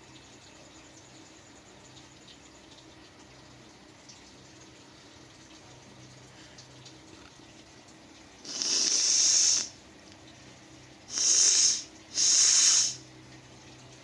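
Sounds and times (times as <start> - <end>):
person blowing nose: 8.5 - 9.7, 11.1 - 13.0.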